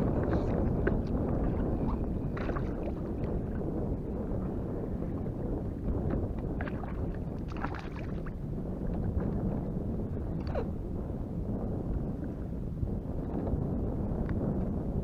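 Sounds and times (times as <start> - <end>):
wind rumbling on microphone: 0.0 - 15.0
water splashing: 0.9 - 3.3, 6.6 - 8.4.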